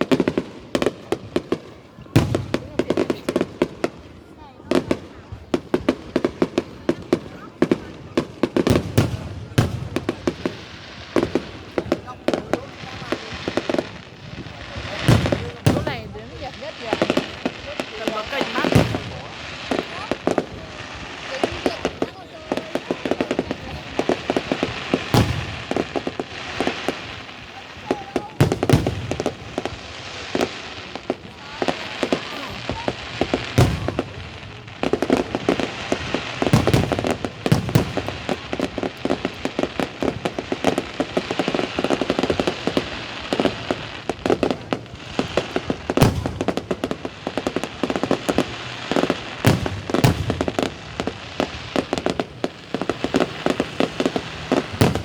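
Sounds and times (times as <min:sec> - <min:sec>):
fireworks crackling and popping: 0:00.0 - 0:55.0
firework shell booming: 0:24.2 - 0:27.1, 0:32.3 - 0:38.3, 0:49.4 - 0:55.0.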